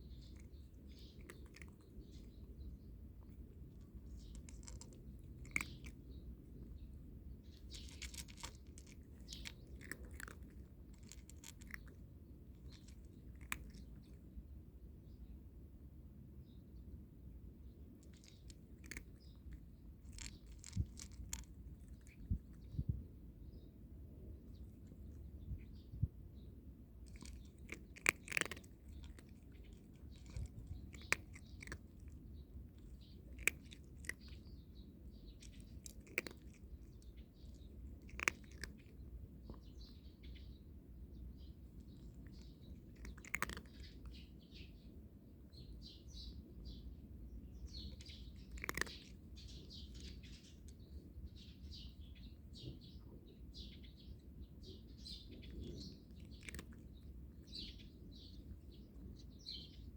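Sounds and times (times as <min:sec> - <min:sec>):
cat crunching dry kibble: 0:00.0 - 0:14.4, 0:17.8 - 0:22.8, 0:24.4 - 0:25.7, 0:26.9 - 0:40.3, 0:41.0 - 0:45.0, 0:47.4 - 0:52.5, 0:55.2 - 0:59.9
small birds chirping: 0:00.0 - 0:59.9.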